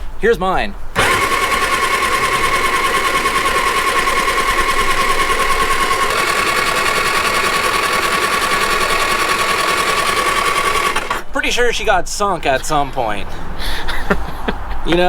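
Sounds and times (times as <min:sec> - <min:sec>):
engine electric starter whine: 0:01.0 - 0:11.4.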